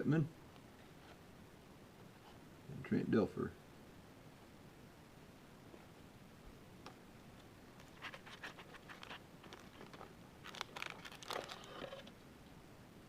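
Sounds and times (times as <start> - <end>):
packaging rustling and crinkling: 7.8 - 12.1.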